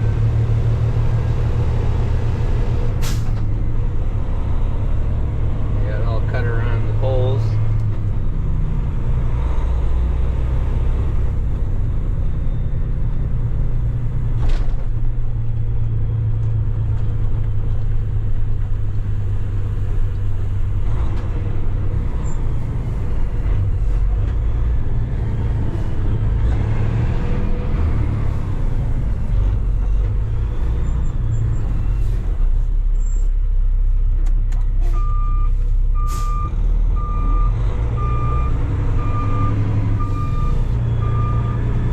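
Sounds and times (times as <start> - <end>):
diesel truck engine running: 0.0 - 41.9
reversing alarm beeping: 35.0 - 41.7.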